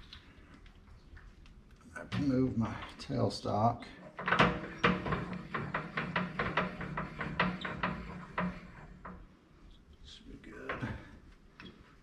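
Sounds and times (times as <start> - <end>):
lathe tailstock clicks and knocks: 4.2 - 9.2.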